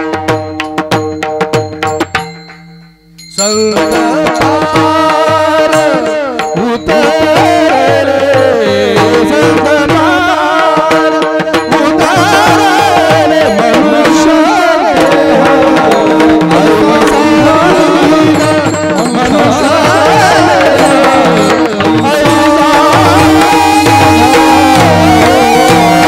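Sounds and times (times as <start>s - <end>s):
tabla playing a rhythm: 0.0s - 26.0s
wavering ornamented melody: 0.5s - 7.7s, 15.7s - 26.0s
held drone note: 15.4s - 26.0s.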